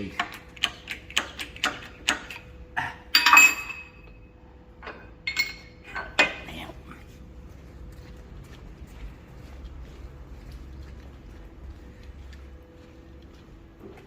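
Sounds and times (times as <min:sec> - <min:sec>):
metal clinking: 0:03.1 - 0:06.4
metal clank ringing: 0:03.2 - 0:04.2, 0:04.8 - 0:06.4.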